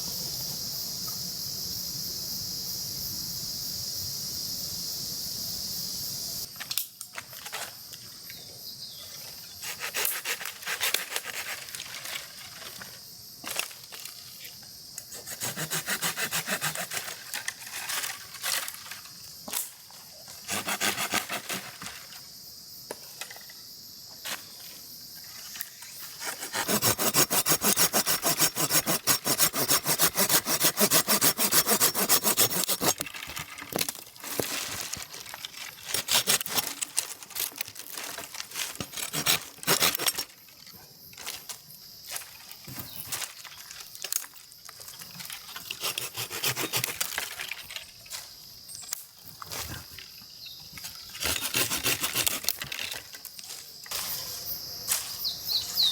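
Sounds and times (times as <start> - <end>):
hand saw cutting wood: 9.6 - 11.8, 15.1 - 18.1, 20.4 - 21.9, 26.0 - 33.3, 35.8 - 37.1, 38.6 - 40.3, 45.5 - 47.4, 51.1 - 53.0.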